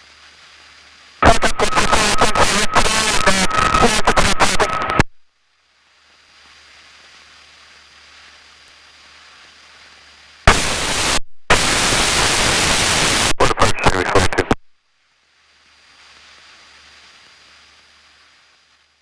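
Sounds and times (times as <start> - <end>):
steady static hiss: 0.0 - 19.0
crackling radio static: 1.2 - 5.3, 6.5 - 14.8.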